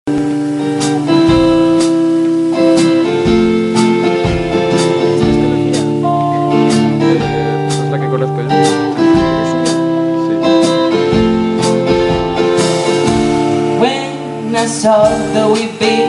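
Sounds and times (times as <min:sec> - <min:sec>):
live band guitar chords: 0:00.0 - 0:16.0.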